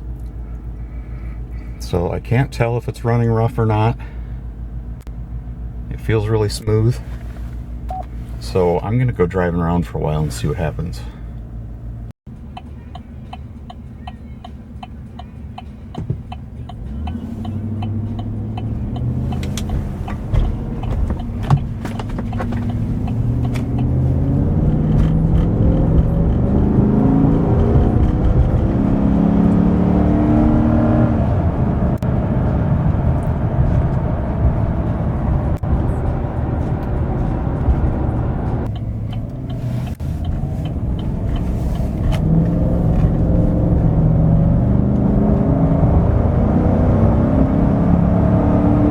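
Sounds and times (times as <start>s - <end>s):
pickup truck engine accelerating: 10.3s - 48.9s.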